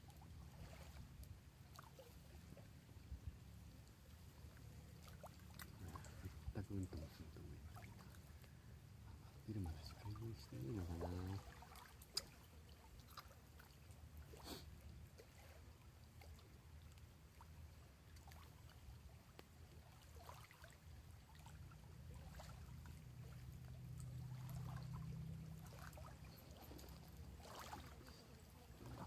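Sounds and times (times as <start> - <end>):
faint low rumble: 0.0 - 20.1, 20.7 - 29.0.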